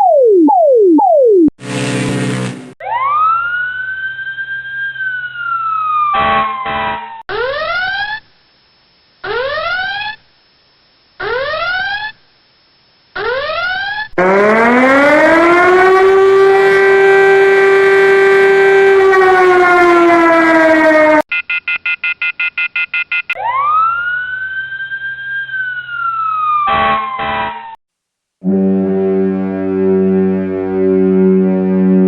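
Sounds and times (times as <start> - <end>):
siren sweeping up and falling: 0.0 - 8.3, 9.2 - 10.2, 11.2 - 12.2, 13.2 - 21.2, 23.4 - 27.8, 28.4 - 32.0
harsh electronic buzz: 1.6 - 2.8
civil-defence siren winding up: 7.3 - 8.3, 9.2 - 10.2, 11.2 - 12.2, 13.2 - 21.2.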